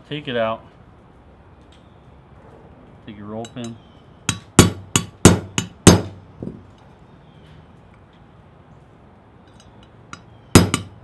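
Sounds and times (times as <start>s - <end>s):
hammer tapping metal punch: 3.5s - 6.2s, 10.2s - 11.0s.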